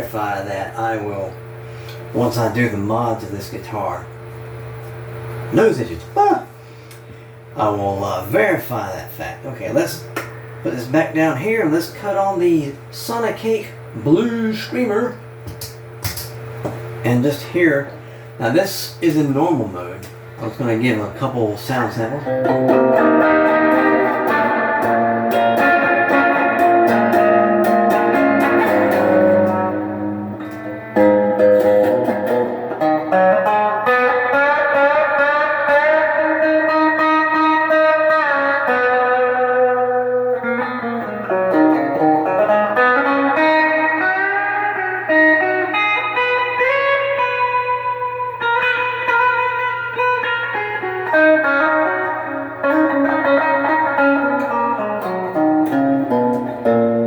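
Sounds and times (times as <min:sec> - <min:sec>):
overdriven electric guitar: 0:22.1 - 0:57.0.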